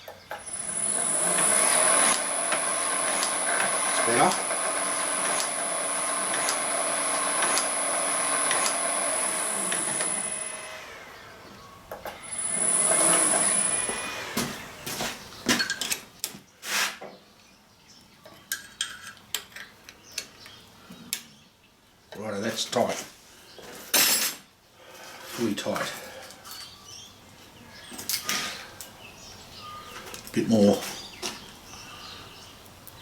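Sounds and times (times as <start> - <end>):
crusher machine whining: 0.3 - 15.0.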